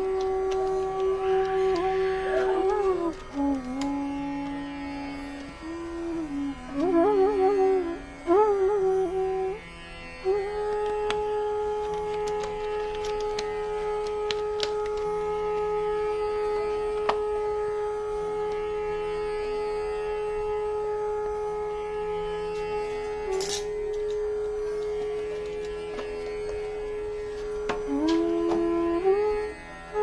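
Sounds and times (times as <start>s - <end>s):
long wind instrument note: 0.0s - 9.6s, 13.6s - 30.0s
soft pulsing drone: 0.0s - 9.6s.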